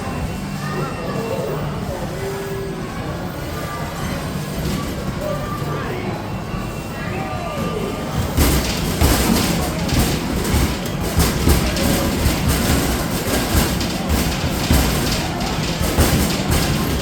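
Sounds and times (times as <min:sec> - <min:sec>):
steady rattling din: 0:07.8 - 0:17.0
balls rumbling down return ramp: 0:08.0 - 0:17.0.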